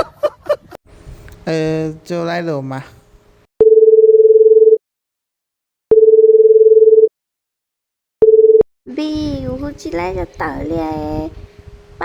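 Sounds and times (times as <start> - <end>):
telephone beep: 3.6 - 4.8, 5.9 - 7.1, 8.2 - 8.6.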